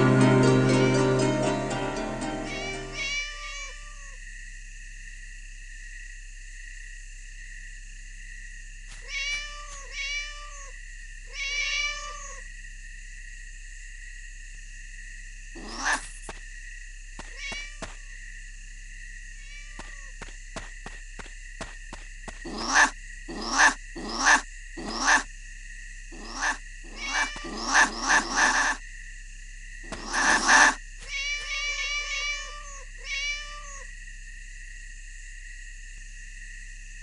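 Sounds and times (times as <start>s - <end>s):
cat meowing: 2.5s - 4.2s, 9.0s - 12.4s, 15.6s - 16.1s, 17.2s - 18.1s, 19.4s - 20.1s, 22.5s - 25.2s, 26.2s - 28.8s, 29.9s - 33.9s.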